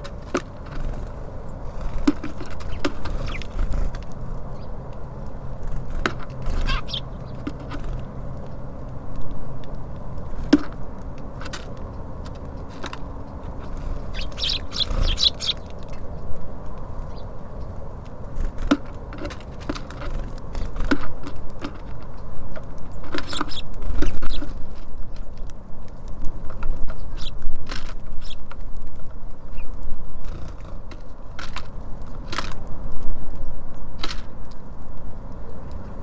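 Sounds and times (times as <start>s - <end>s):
birds pecking on feeder: 0.0s - 36.0s
traffic hum: 0.0s - 36.0s
high bird calls: 2.6s - 3.9s, 6.4s - 8.0s, 13.3s - 16.1s, 23.2s - 25.3s, 26.8s - 28.5s, 29.4s - 29.8s.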